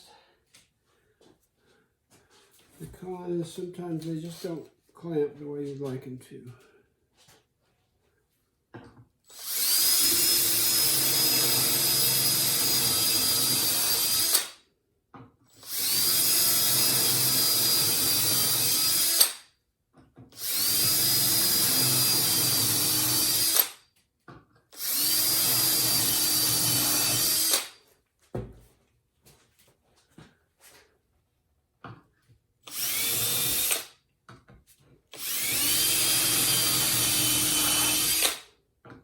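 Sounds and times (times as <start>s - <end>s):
power drill whining: 9.3s - 14.6s, 15.5s - 19.4s, 20.3s - 23.8s, 24.7s - 27.8s, 32.6s - 34.0s, 35.1s - 38.5s.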